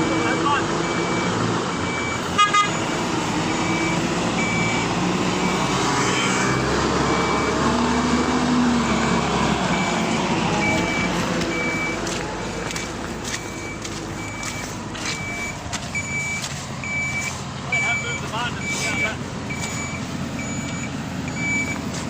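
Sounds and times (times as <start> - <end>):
lorry engine running: 0.0 - 22.0
reversing alarm beeping: 0.0 - 22.0.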